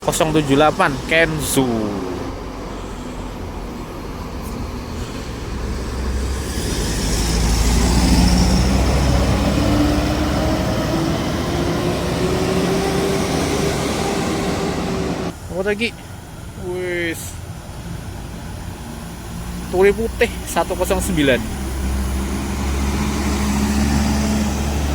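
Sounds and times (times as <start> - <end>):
bus engine driving past: 0.0 - 16.6, 17.2 - 24.9
whine rising in pitch: 5.8 - 15.3.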